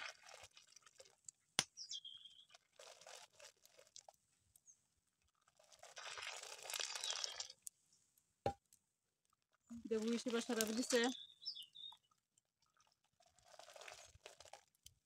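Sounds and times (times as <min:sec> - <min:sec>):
thick syrup boiling and bubbling: 0:00.0 - 0:07.8, 0:08.9 - 0:15.0.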